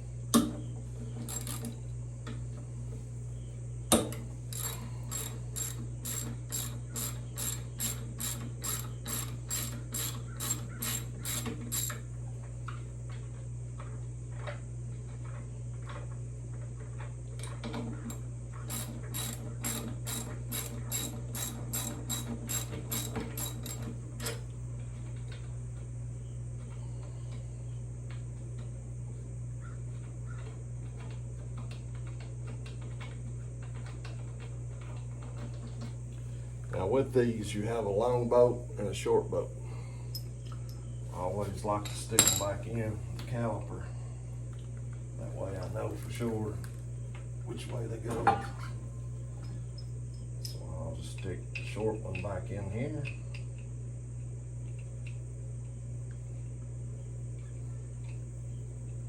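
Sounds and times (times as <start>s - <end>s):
ratchet clicking: 4.5s - 12.0s.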